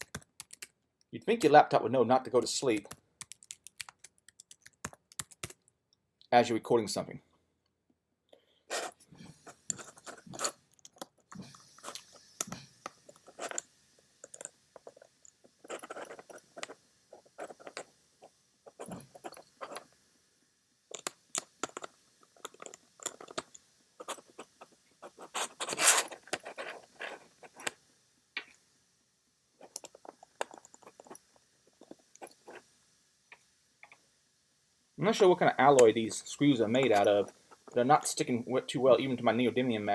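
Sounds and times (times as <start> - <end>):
small screws clicking and scraping: 2.3 - 5.8, 8.7 - 20.0, 20.9 - 28.6, 29.6 - 34.0, 35.6 - 38.3.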